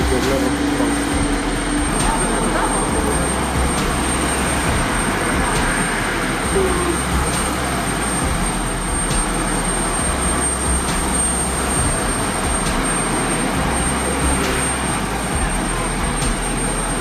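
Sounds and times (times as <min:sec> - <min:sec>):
jet airliner engine rushing: 0:00.0 - 0:17.0.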